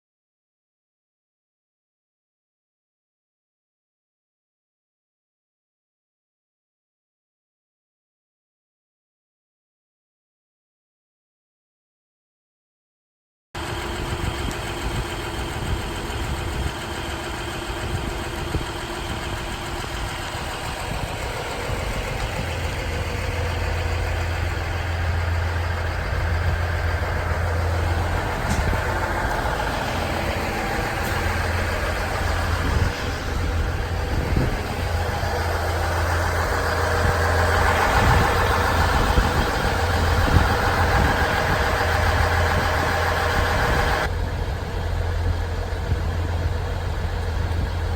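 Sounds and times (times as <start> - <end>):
diesel railcar engines humming: 13.6 - 47.9.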